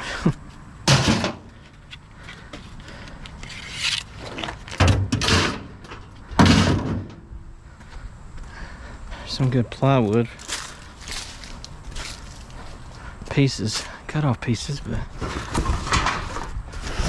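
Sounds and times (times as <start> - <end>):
scrap metal knocks and clatters: 15.2 - 17.0.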